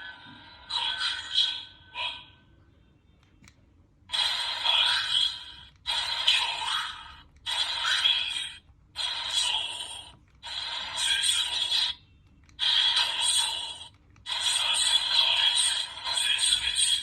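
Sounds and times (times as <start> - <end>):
toy belt electronic sound effects: 4.1 - 12.0, 12.6 - 17.0.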